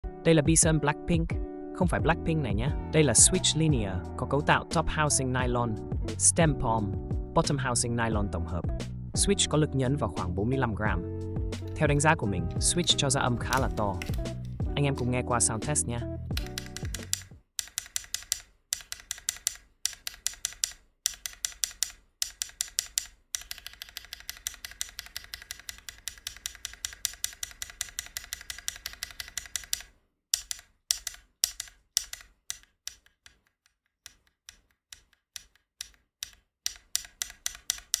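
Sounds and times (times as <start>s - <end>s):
mechanical keyboard typing: 12.5s - 15.1s, 16.3s - 38.0s.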